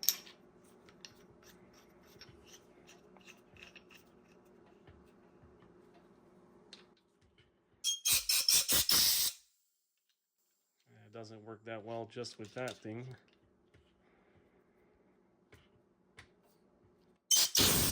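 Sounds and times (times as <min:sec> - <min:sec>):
compressed air blasts: 0:08.2 - 0:09.4, 0:17.3 - 0:17.9.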